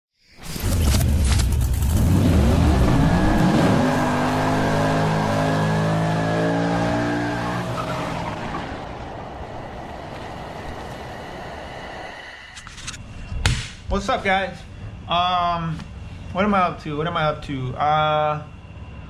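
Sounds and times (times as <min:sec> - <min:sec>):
car engine accelerating: 0:00.6 - 0:12.2.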